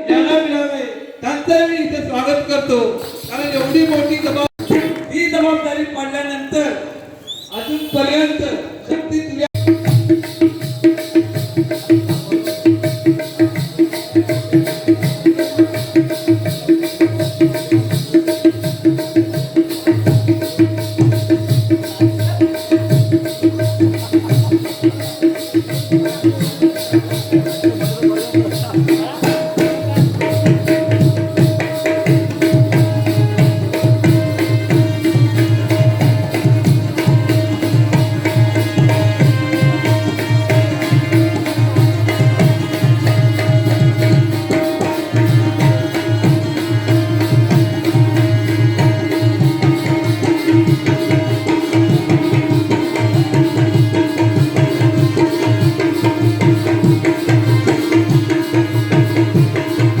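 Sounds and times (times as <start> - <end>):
hand drum fast rhythm: 3.0 - 5.2, 9.4 - 60.0.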